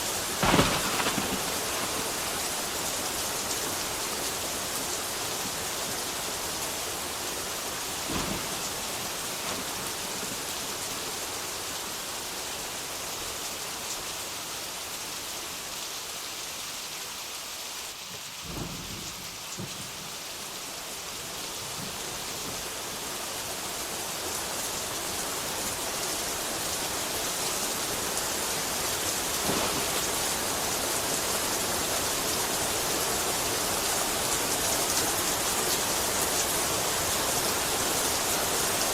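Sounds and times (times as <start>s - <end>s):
steady rain hissing: 0.0s - 38.9s
low rumbles of thunder: 0.2s - 3.9s, 18.4s - 20.2s, 29.2s - 31.5s.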